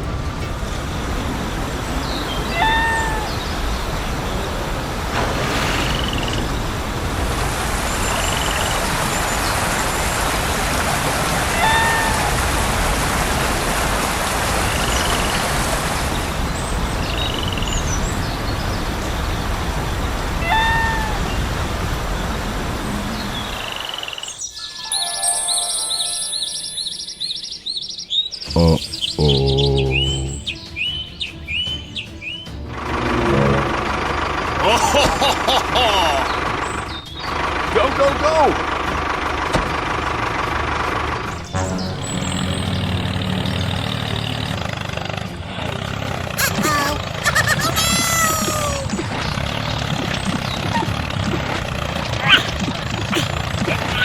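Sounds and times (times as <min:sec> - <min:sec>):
vehicle running noise: 0:00.0 - 0:20.4, 0:21.3 - 0:24.1, 0:31.2 - 0:54.0
rising and falling call: 0:02.5 - 0:03.6, 0:11.5 - 0:12.4, 0:28.8 - 0:30.6, 0:32.4 - 0:34.9, 0:41.5 - 0:44.6
high chirps: 0:41.4 - 0:44.4.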